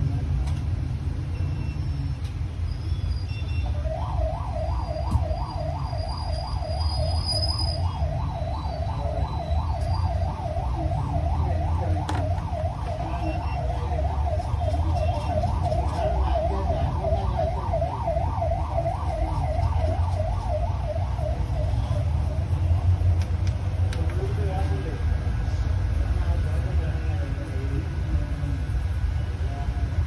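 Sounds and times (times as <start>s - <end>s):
siren warbling: 3.3s - 23.1s.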